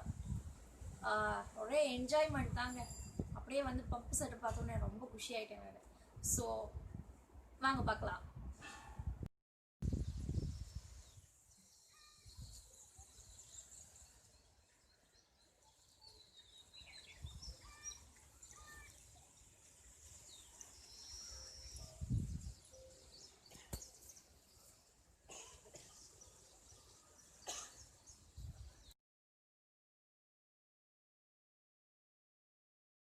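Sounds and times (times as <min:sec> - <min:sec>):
birds chirping: 0:10.2 - 0:28.9.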